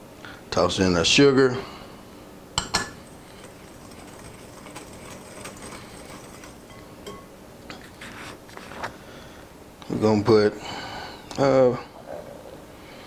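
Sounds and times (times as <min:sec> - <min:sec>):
low room hum: 0:00.0 - 0:13.0
utensil clinking mixing bowl: 0:02.6 - 0:08.5.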